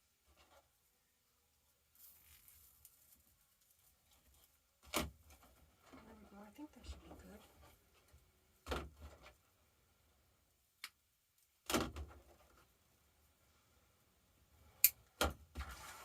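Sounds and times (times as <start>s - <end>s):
rustling: 0.0s - 8.3s, 15.5s - 16.0s.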